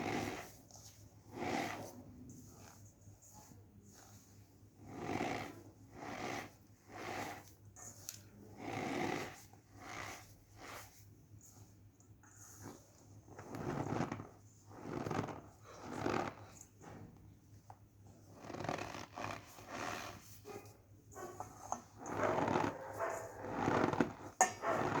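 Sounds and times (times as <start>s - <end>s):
cornstarch squeaky squishes: 0.1s - 14.1s.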